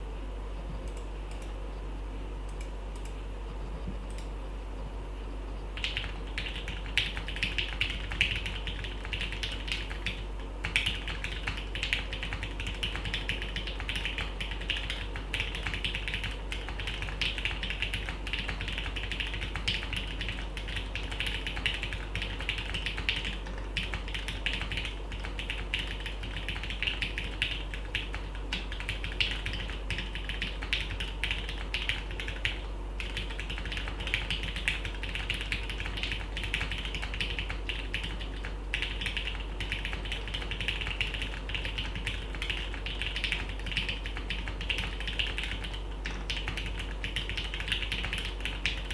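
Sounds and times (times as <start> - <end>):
typing on mechanical keyboard: 5.8 - 48.9.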